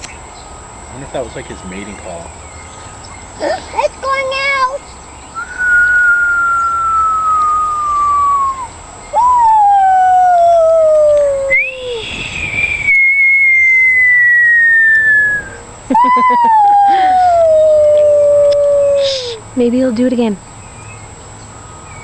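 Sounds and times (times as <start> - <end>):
bird whistling downward glides: 5.3 - 19.4.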